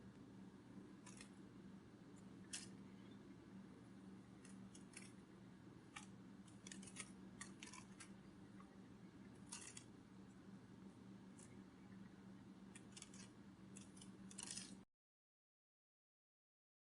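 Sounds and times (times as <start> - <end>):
low steady hum: 0.0 - 14.9.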